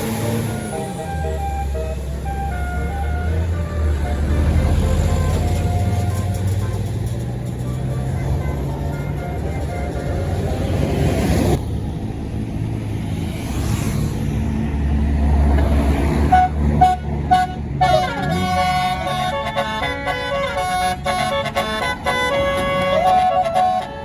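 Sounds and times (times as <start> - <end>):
multi-tone bus horn melody: 0.0 - 11.3, 16.2 - 24.0
bus engine rumbling: 0.0 - 24.0
short horn toots: 16.3 - 24.0.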